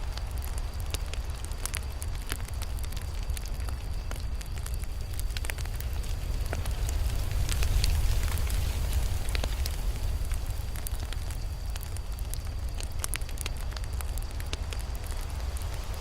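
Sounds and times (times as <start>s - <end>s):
campfire wood crackling: 0.0s - 16.0s
low rumble of fire: 0.0s - 16.0s.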